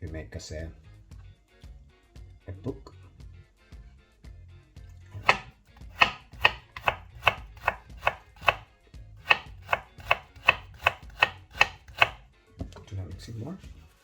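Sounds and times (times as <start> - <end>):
knife cutting on cutting board: 5.2 - 12.2.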